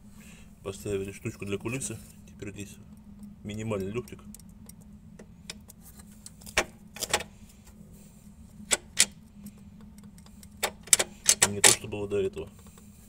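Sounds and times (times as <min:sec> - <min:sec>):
steady low hum: 0:00.0 - 0:13.0
gear shift linkage clicks: 0:08.7 - 0:09.2, 0:09.8 - 0:11.9.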